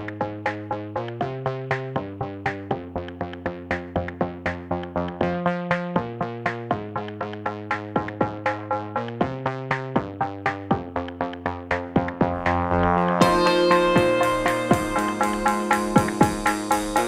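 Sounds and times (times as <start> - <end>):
drum machine beat: 0.0 - 17.0
synthesizer chords: 4.4 - 17.0.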